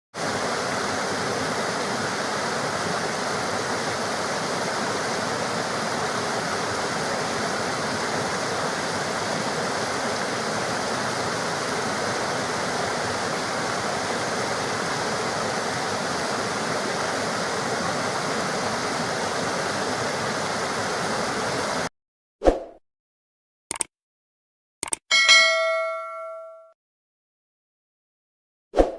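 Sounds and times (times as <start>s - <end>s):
rushing water: 0.1s - 21.9s.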